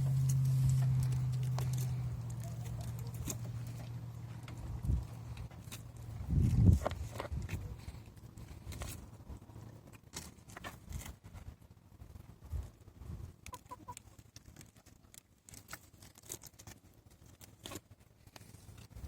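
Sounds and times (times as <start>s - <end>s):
goat chewing pumpkin: 0.0s - 9.2s.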